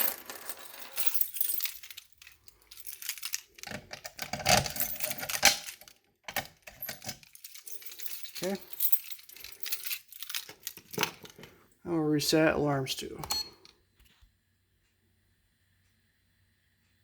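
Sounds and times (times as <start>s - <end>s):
keys jangling: 0.0s - 11.4s.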